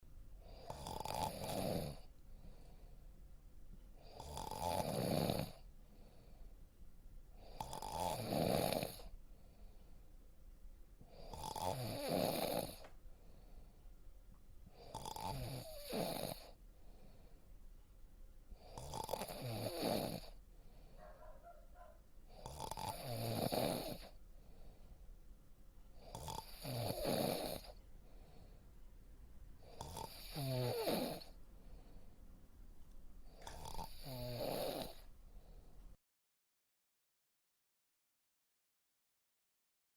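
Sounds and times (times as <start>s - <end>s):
quiet breathing: 0.2s - 10.4s, 11.0s - 36.0s
person snoring: 0.4s - 2.1s, 4.0s - 5.6s, 7.4s - 9.1s, 11.1s - 12.8s, 14.8s - 16.6s, 18.6s - 20.4s, 22.3s - 24.2s, 26.0s - 27.8s, 29.6s - 31.4s, 33.4s - 35.1s.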